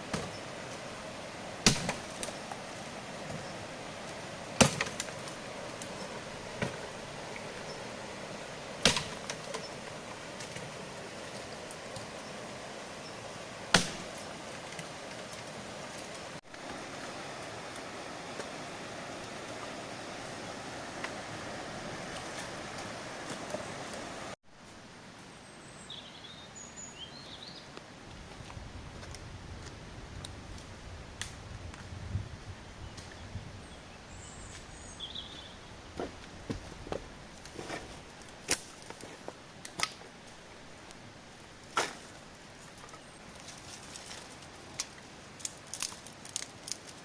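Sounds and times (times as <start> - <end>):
outdoor ambience: 0.0 - 47.0
blade chopping wood: 1.6 - 2.4, 4.6 - 5.3, 8.8 - 9.7, 13.7 - 14.2, 41.7 - 42.0.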